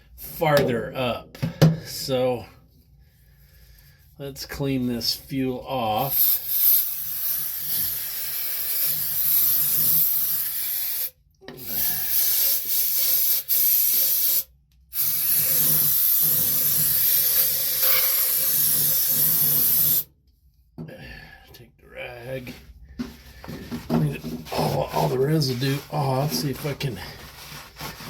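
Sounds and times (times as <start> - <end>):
aerosol can spraying hiss: 6.1 - 20.1.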